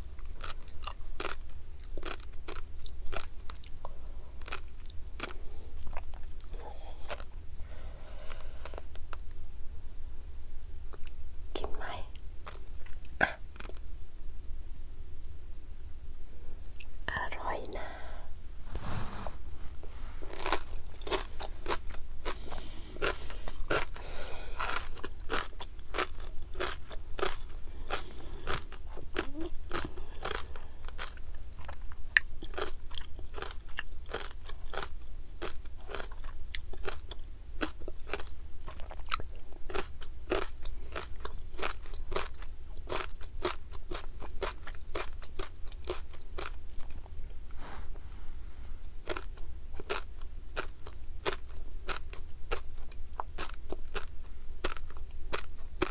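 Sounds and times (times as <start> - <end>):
chewing fish roe popping: 0.2 - 7.4, 20.3 - 47.2, 49.0 - 55.9.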